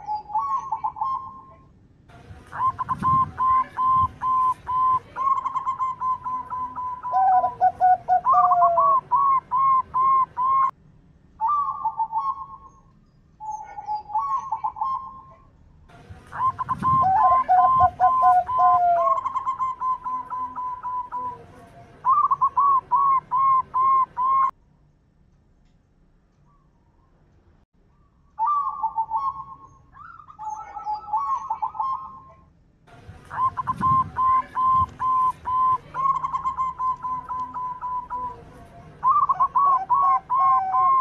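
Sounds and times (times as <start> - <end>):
dove cooing: 0.0 - 1.6, 2.5 - 10.7, 16.3 - 24.5, 28.4 - 32.4, 33.1 - 41.0.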